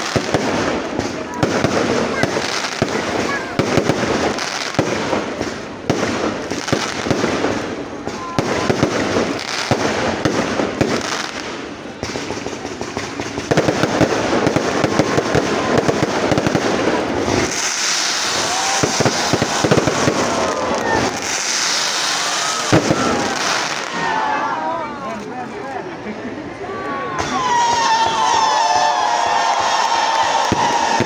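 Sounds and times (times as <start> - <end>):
fireworks crackling and banging: 0.0 - 26.6, 27.2 - 31.0
fireworks hissing whistles: 13.5 - 24.0.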